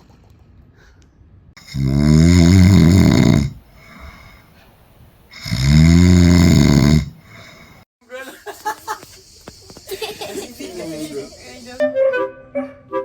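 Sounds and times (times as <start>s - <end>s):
dog snoring: 1.6s - 3.6s, 5.3s - 7.2s
soft breath out: 3.7s - 4.8s, 7.2s - 7.8s.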